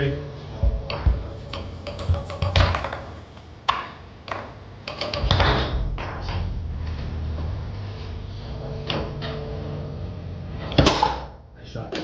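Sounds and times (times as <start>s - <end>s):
foosball rods clacking: 0.6s - 5.6s
foosball ball knocking: 0.6s - 5.7s.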